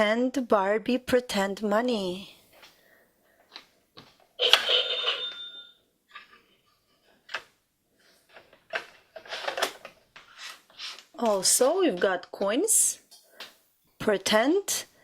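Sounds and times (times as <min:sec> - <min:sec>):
short bright ring: 0:04.4 - 0:05.8.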